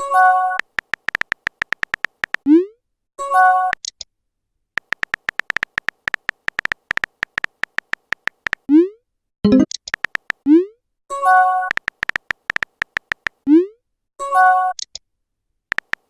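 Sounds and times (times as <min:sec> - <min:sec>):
phone keyboard typing clicks: 0:00.5 - 0:02.5, 0:04.8 - 0:08.7, 0:09.5 - 0:10.4, 0:11.6 - 0:13.4, 0:15.7 - 0:16.0
rising chat message pops: 0:09.4 - 0:10.5
message alert chime: 0:09.5 - 0:09.7.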